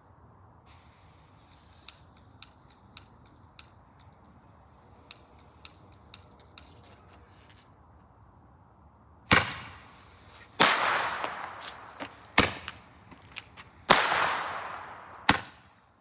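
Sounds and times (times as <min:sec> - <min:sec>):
low steady background noise: 0:00.0 - 0:16.0
faint mechanical clicks: 0:00.7 - 0:08.2.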